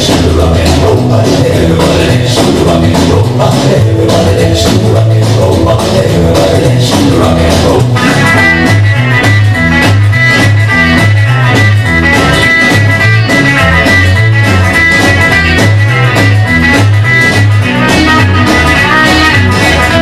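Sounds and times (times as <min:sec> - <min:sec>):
pulsing bass line: 0:00.0 - 0:20.0
rock and roll guitar: 0:00.0 - 0:20.0
steady drum beat: 0:00.0 - 0:20.0.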